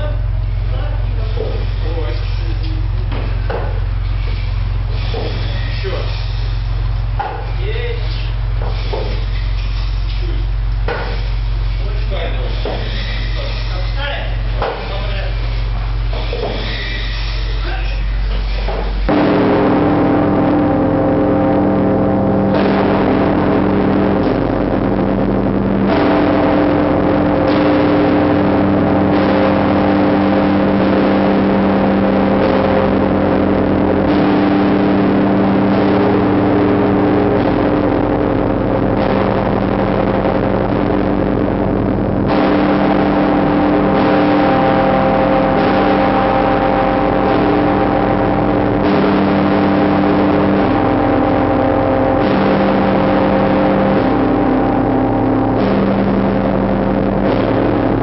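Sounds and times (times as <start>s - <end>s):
giant church bell ringing: 19.1s - 58.0s.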